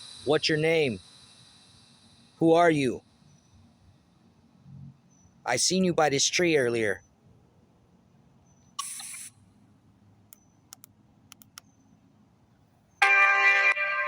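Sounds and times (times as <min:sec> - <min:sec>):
faint low hum: 0:00.0 - 0:13.0
short hiss: 0:08.8 - 0:09.6
faint clicks: 0:10.3 - 0:11.8.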